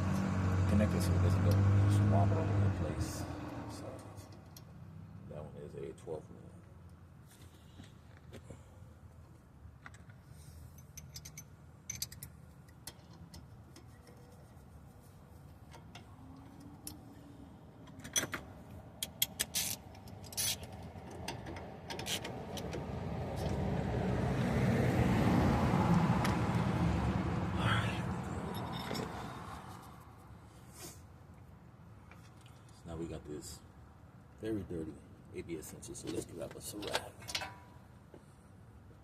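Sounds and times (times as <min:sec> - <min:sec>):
passing vehicle rumble: 0:00.0 - 0:05.2, 0:20.8 - 0:30.2
metallic clinks of wrenches: 0:10.6 - 0:14.4, 0:19.0 - 0:22.7, 0:28.4 - 0:29.4, 0:36.0 - 0:37.8.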